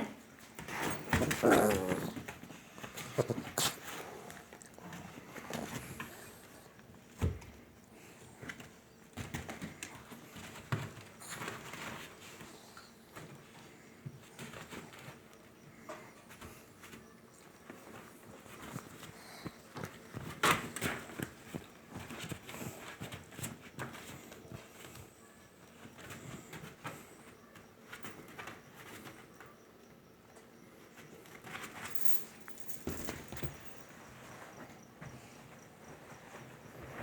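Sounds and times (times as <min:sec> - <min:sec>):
small dogs vocalising: 0:00.9 - 0:02.4.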